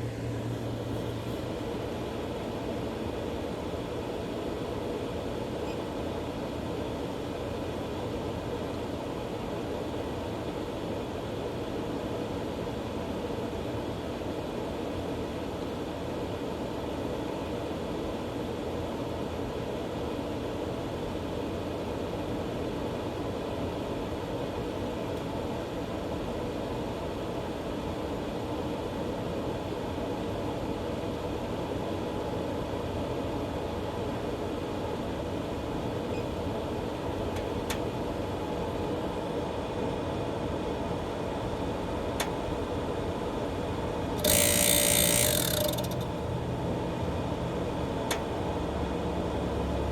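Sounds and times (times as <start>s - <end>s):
loud mechanical grill noise: 0.0s - 3.0s, 41.4s - 49.9s.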